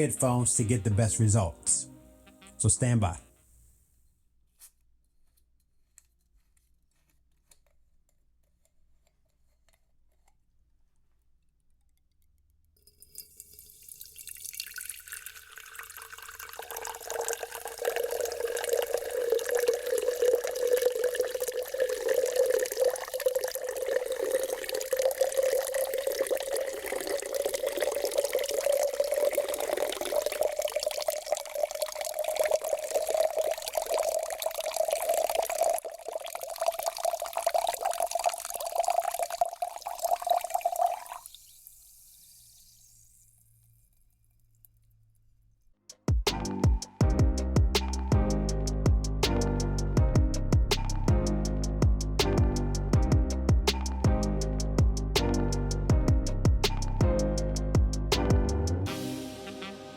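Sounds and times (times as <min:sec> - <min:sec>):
sparkling water pouring into jar: 0:12.8 - 0:44.2
fizzing hiss: 0:13.3 - 0:43.5.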